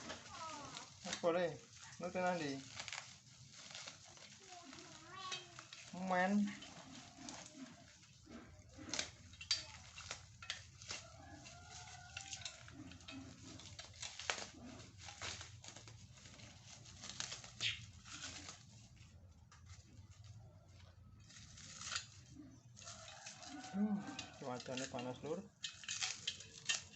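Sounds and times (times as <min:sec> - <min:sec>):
parts and packaging clicking: 0:00.0 - 0:26.9.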